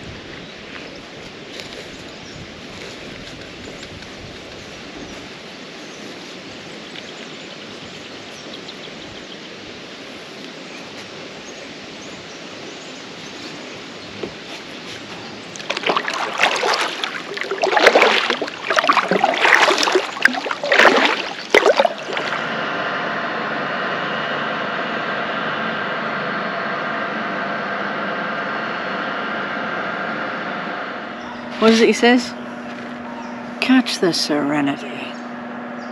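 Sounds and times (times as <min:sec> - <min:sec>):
steady water noise: 0:00.0 - 0:24.0, 0:31.0 - 0:35.7
steady multi-tone hum: 0:00.0 - 0:35.9
kayak paddle splashing: 0:14.4 - 0:22.6.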